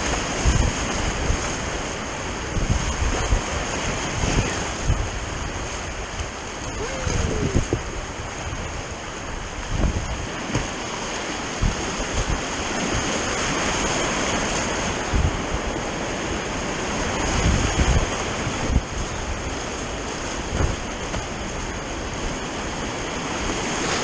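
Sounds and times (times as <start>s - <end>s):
river water rushing through rapids: 0.0s - 24.0s
low thuds on the microphone: 20.5s - 21.3s.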